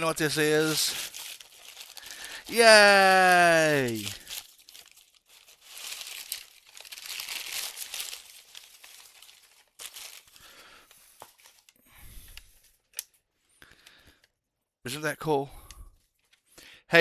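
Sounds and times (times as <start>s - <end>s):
packaging crinkling and tearing: 0.0s - 11.8s
rustling and handling: 0.2s - 13.2s.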